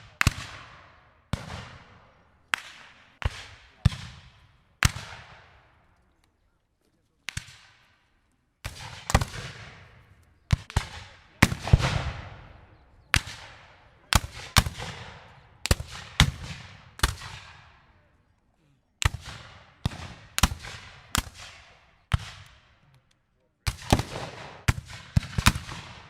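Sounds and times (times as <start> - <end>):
musket shots with echo: 0.0 - 5.8, 7.3 - 8.0, 8.6 - 18.1, 19.0 - 22.8, 23.6 - 26.0.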